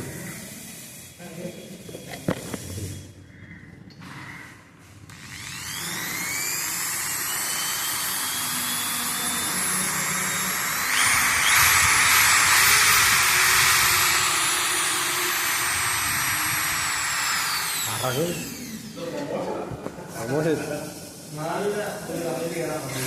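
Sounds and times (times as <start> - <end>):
electric drill whining: 5.1 - 19.0.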